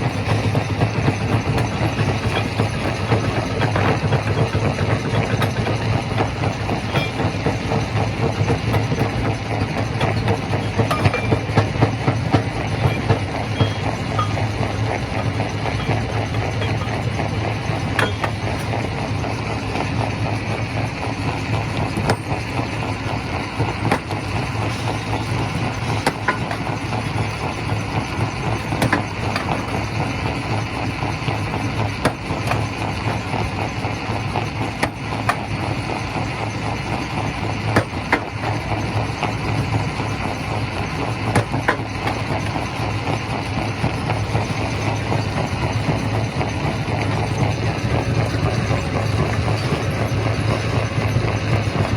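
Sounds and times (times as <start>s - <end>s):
low machine drone: 0.0s - 34.1s, 38.3s - 51.9s
stone rattling and knocking: 8.5s - 18.8s.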